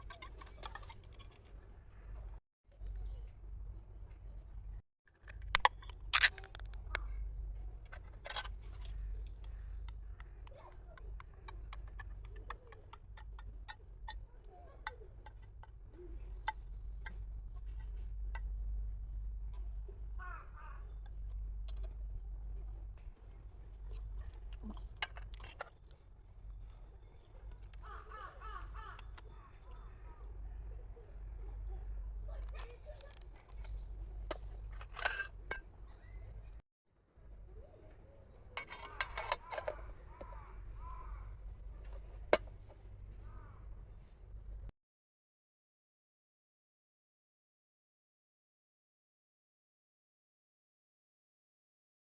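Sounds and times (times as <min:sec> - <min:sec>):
low steady rumble: 0:01.4 - 0:36.6
arching cawing calls: 0:20.2 - 0:21.0, 0:27.8 - 0:30.0, 0:39.7 - 0:41.4, 0:43.2 - 0:43.7.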